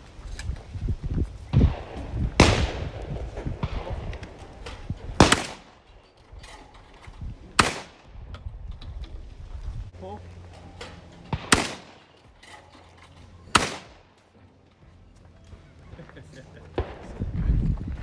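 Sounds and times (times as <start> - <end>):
shotgun shots with echo: 1.5 - 5.9, 7.5 - 8.2, 11.3 - 12.2, 13.5 - 14.2.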